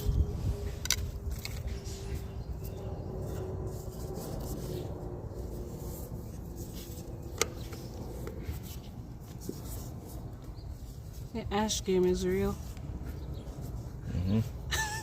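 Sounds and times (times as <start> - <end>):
tape rubbing on threads: 0.0 - 11.4.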